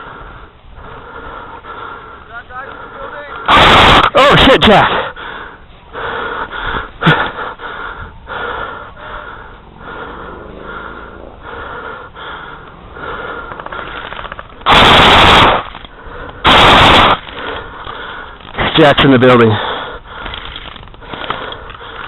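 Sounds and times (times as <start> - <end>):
intermittent noises: 0.0 - 22.0
rapid airsoft gunfire: 13.8 - 15.8, 16.4 - 17.4.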